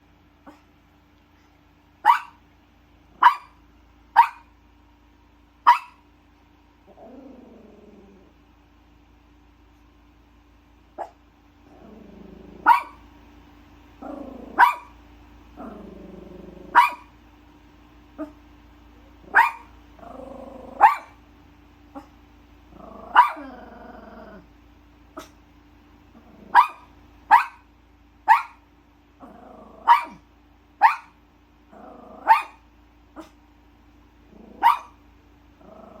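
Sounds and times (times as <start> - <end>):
electric fan humming: 0.0 - 36.0
dog barking: 2.0 - 2.4, 3.2 - 4.5, 5.6 - 6.0, 11.0 - 11.2, 12.6 - 13.0, 14.5 - 14.9, 16.7 - 17.1, 19.3 - 19.7, 20.8 - 21.2, 23.1 - 23.5, 26.5 - 27.6, 28.3 - 28.6, 29.8 - 30.2, 30.8 - 31.2, 32.2 - 32.6, 34.6 - 35.0
dog growling: 6.8 - 8.4, 11.6 - 13.0, 14.0 - 14.9, 15.6 - 17.1, 19.2 - 21.2, 22.7 - 24.5, 26.1 - 26.8, 29.2 - 30.2, 31.7 - 32.6, 34.2 - 34.9, 35.6 - 36.0.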